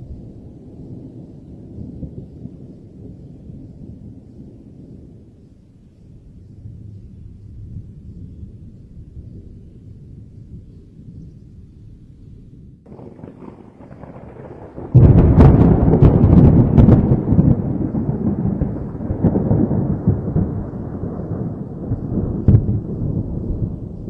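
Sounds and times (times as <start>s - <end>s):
thunder rumble: 0.0s - 24.0s
loud thunderclap with cracks: 12.9s - 24.0s.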